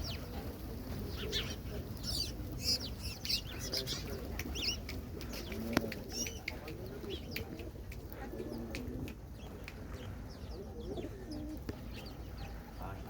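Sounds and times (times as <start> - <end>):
pigeons cooing: 0.0 - 13.0
small birds chirping: 0.0 - 13.0.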